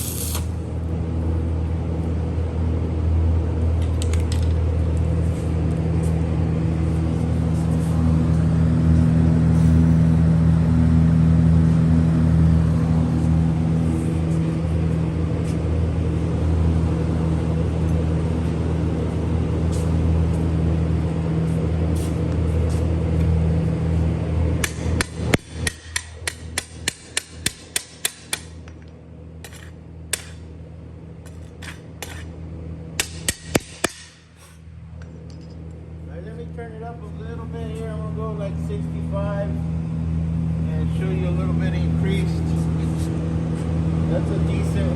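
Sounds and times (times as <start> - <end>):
crackle of welding arc: 0.0 - 0.6
welding power source humming: 0.0 - 44.9
hammer tapping slag: 24.6 - 28.5, 33.0 - 34.2.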